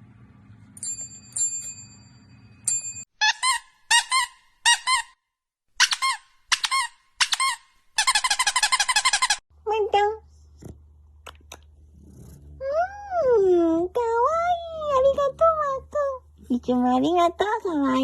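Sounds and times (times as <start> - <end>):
high ringing dings: 0.8 - 3.1.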